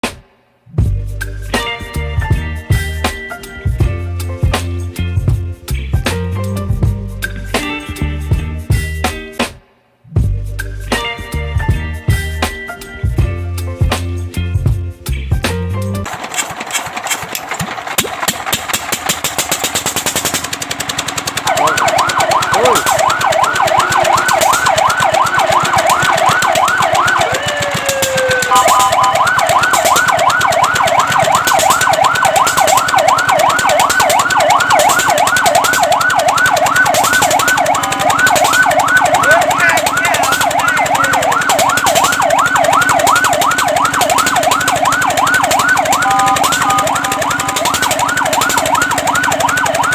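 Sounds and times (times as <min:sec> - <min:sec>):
fast steady pulsing noise: 0:16.0 - 0:49.9
fire truck siren yelping: 0:16.0 - 0:49.9
two-note siren tone: 0:21.4 - 0:49.9.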